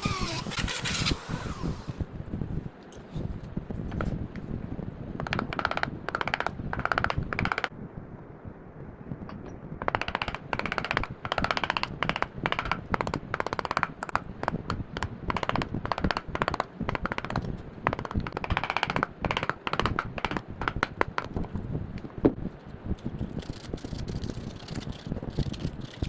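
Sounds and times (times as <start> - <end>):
hand tools clicking on wood: 5.2 - 7.7, 9.8 - 21.6.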